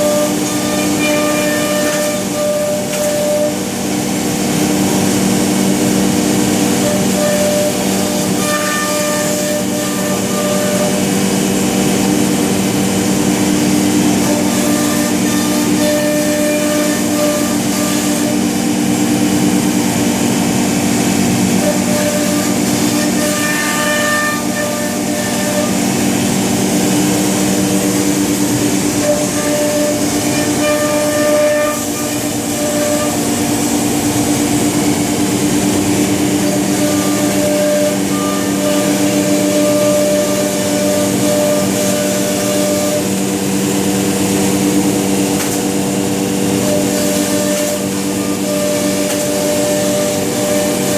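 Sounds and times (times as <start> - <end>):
cnc router humming: 0.0 - 50.9
router high whine: 0.0 - 50.9.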